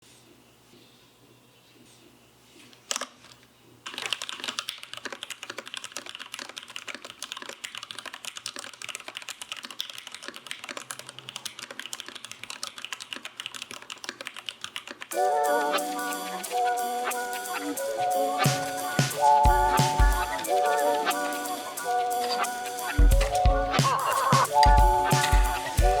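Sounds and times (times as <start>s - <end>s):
mechanical keyboard typing: 3.9s - 15.1s.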